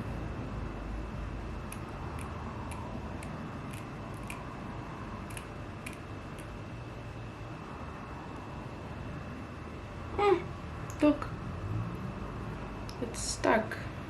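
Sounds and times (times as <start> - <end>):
steady background hum: 0.0 - 14.0.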